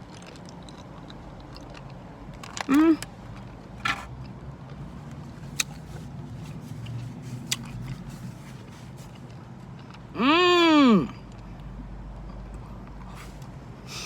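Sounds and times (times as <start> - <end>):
gum chewing mouth sounds: 5.5 - 10.0.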